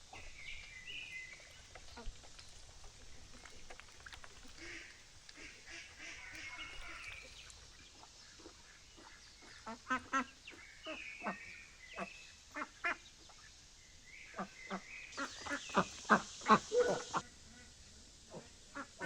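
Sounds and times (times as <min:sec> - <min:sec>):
ducks quacking: 0:04.4 - 0:07.2, 0:08.2 - 0:13.0, 0:14.4 - 0:17.7.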